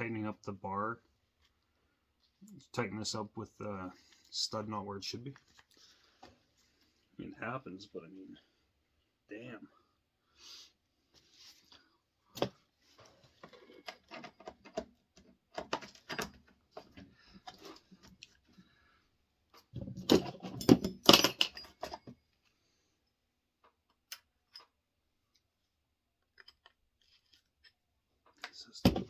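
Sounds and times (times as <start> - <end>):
metal parts clinking and rattling: 19.8 - 22.1.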